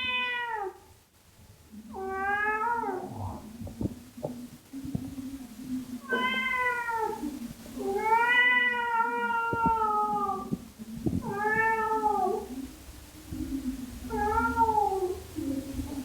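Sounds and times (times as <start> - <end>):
cat yowling meows: 0.0 - 0.8, 6.0 - 7.2, 7.9 - 10.5, 14.1 - 15.2.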